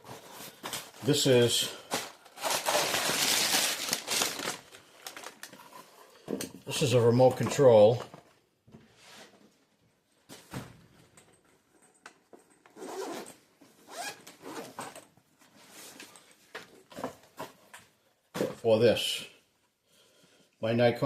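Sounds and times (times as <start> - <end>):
packaging rustling and scraping: 0.0 - 6.0.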